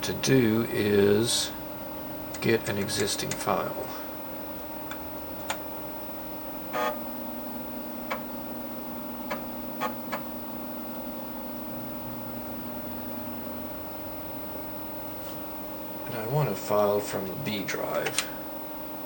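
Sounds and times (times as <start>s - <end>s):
computer electrical hum: 0.0s - 19.0s
lower hum: 0.0s - 19.0s.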